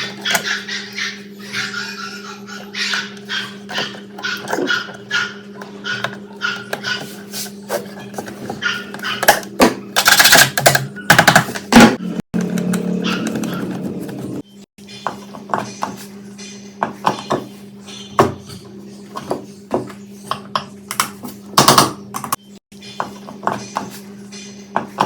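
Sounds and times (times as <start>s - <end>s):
metal parts clicking and clattering: 10.0s - 11.4s.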